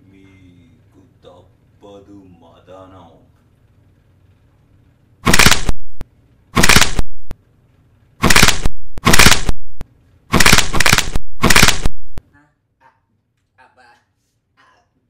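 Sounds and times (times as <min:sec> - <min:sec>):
neck cracking sound effect: 0:05.2 - 0:06.0, 0:06.6 - 0:07.4, 0:08.2 - 0:12.2.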